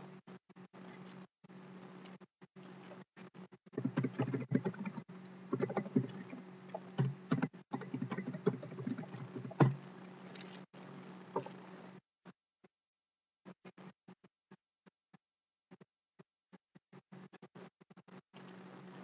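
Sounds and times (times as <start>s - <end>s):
low electrical hum: 0.0s - 12.0s, 17.1s - 19.0s
computer keyboard typing: 3.8s - 9.8s.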